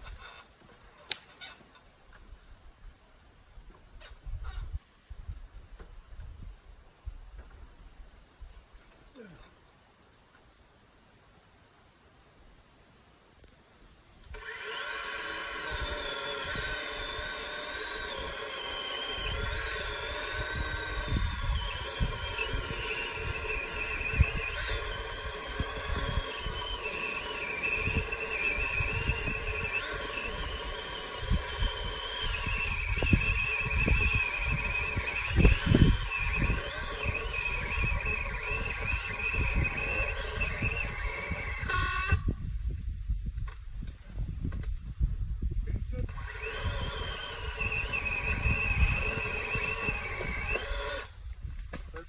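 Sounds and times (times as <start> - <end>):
battery chainsaw whining: 14.3 - 42.4, 46.1 - 51.2.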